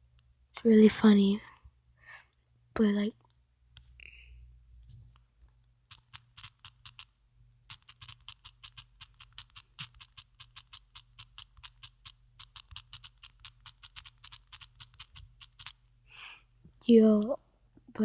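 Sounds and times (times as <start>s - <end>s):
phone keyboard typing clicks: 5.9s - 7.1s, 7.7s - 15.8s.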